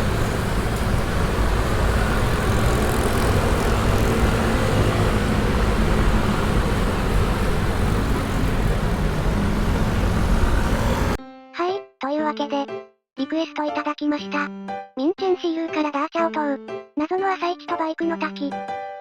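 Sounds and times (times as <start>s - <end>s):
vehicle engines: 0.0s - 11.2s.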